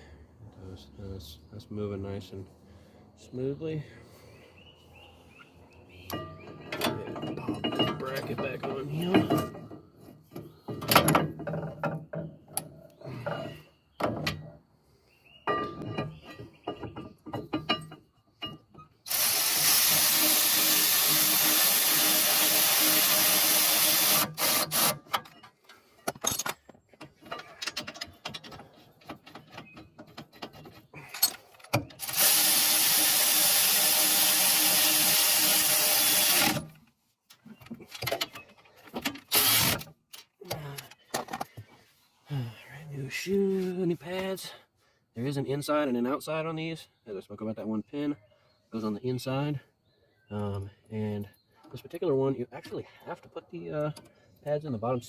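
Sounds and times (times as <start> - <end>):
metal clinks and knocks of tools: 6.1 - 12.3, 15.5 - 18.9, 25.2 - 31.7
cordless power tool driving bolts: 19.0 - 26.6, 27.4 - 36.8, 38.0 - 40.6.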